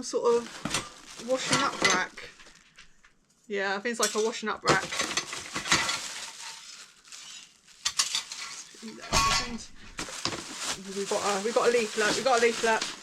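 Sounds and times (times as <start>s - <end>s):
metal dish rack clinking: 7.9s - 9.7s.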